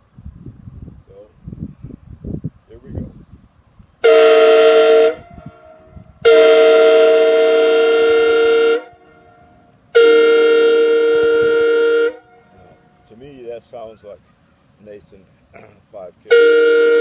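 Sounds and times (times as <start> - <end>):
locomotive horn chord blasts: 4.0 - 13.4, 16.2 - 17.0.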